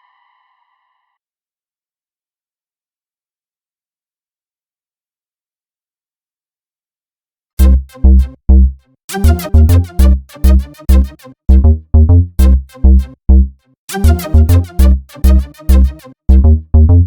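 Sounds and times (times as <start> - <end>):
electronic dance music: 7.6 - 8.4, 9.1 - 11.7, 12.4 - 13.1, 13.9 - 16.6.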